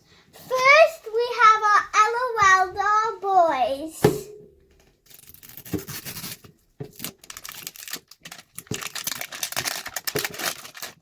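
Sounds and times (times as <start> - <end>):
plastic wrapping tearing and crinkling: 5.1 - 11.0.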